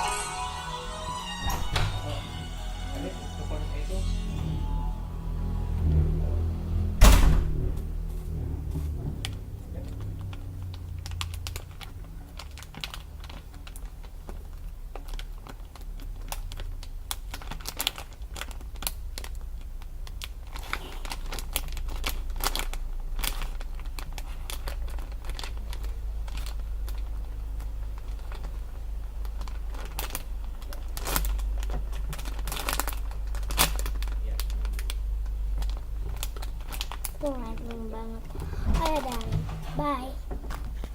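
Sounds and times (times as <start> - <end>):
low hum: 0.0 - 9.6
plastic packaging crinkling: 9.3 - 40.9.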